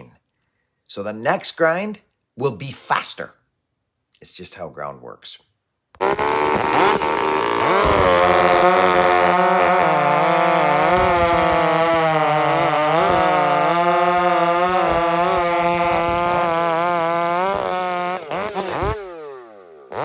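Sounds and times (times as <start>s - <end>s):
chainsaw cutting wood: 6.0s - 20.0s.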